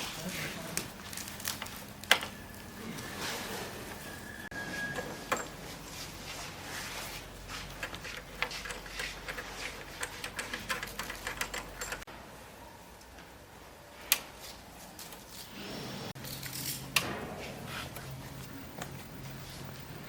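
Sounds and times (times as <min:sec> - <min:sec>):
rapid clicking and tapping: 0:07.8 - 0:12.1.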